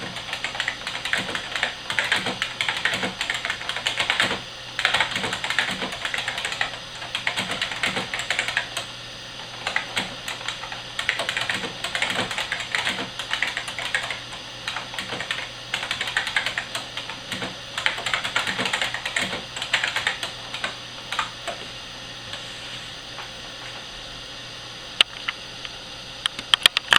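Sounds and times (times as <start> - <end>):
clicky mechanical keyboard typing: 0.0 - 8.9, 9.5 - 21.6.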